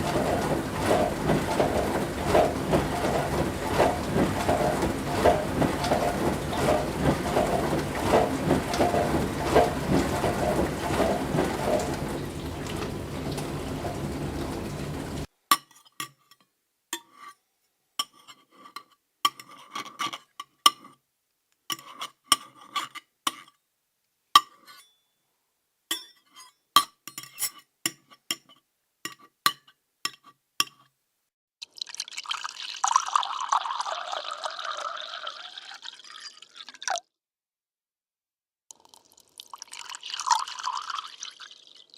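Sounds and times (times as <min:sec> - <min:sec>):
appliance motor humming: 0:00.0 - 0:15.3
liquid poured into glass: 0:31.7 - 0:37.1, 0:38.8 - 0:41.9.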